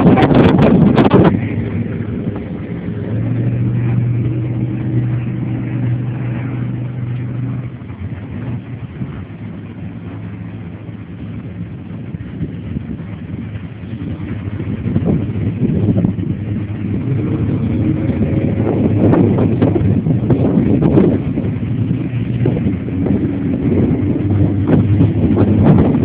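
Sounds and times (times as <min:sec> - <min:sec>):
boat engine droning: 0:00.0 - 0:26.0
rushing noise: 0:00.0 - 0:26.0.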